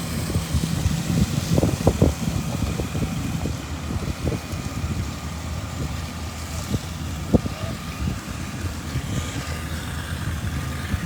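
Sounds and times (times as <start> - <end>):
fire truck engines running: 0.0 - 11.0
wind buffeting microphone: 0.0 - 11.0.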